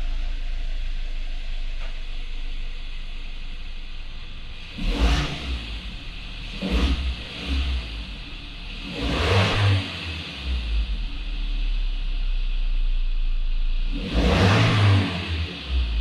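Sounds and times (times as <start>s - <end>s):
car engine idling: 0.0s - 16.0s
engine revving blips: 4.7s - 11.0s, 13.9s - 16.0s.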